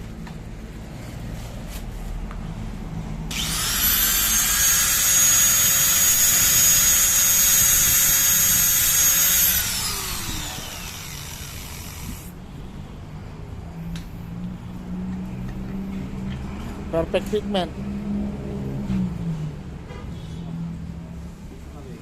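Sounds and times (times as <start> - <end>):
electric grinder whining: 3.3 - 12.3.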